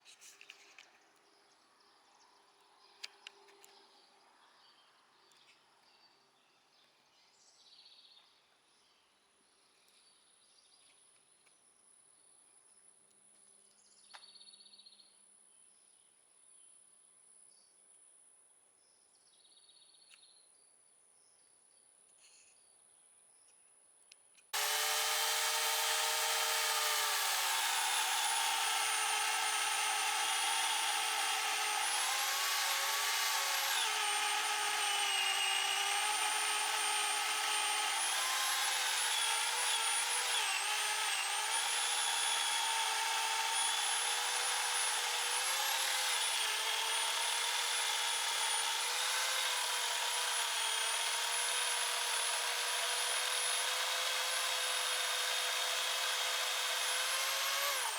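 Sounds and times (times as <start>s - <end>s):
power saw cutting log: 24.6s - 57.9s.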